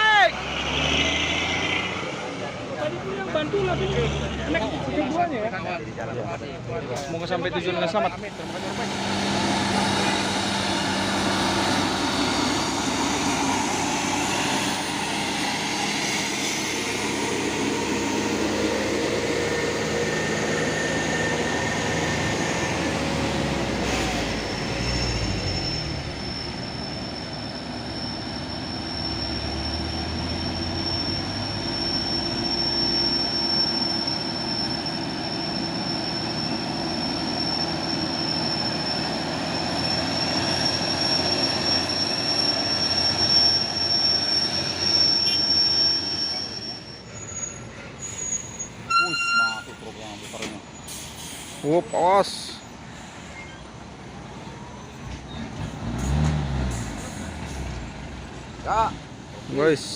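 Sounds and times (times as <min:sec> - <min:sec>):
diesel truck engine under load: 0:00.3 - 0:46.4, 0:49.6 - 0:59.9
high-pitched squeal: 0:08.1 - 0:53.8.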